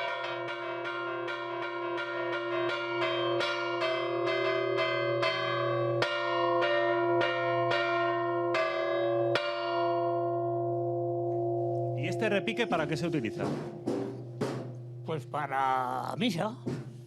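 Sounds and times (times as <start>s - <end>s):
church bells pealing: 0.0s - 14.0s.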